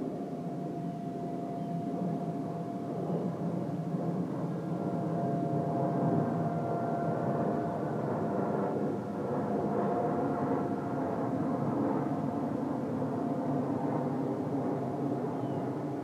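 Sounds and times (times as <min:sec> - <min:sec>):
distant warning siren: 0:00.0 - 0:09.2.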